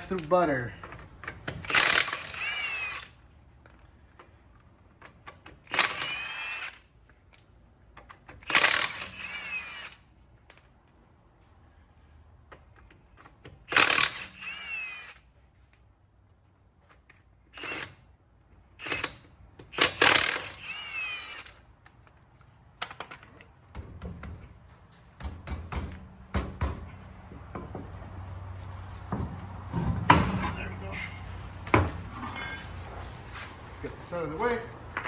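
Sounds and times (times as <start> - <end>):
impact wrench spinning lug nuts: 1.4 - 3.2, 5.4 - 6.9, 8.0 - 10.1, 13.6 - 15.3, 17.6 - 18.1, 18.8 - 21.7, 29.0 - 32.8
lug nuts and tools clicking: 7.1 - 9.3, 21.3 - 33.2.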